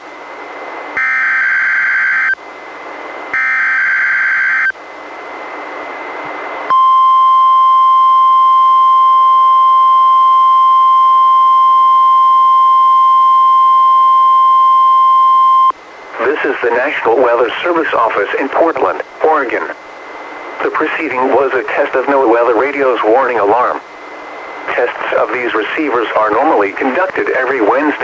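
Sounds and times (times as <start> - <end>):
steady warning alarm tone: 1.0 - 2.4, 3.3 - 4.8, 6.7 - 19.0
radio hiss: 15.2 - 28.0.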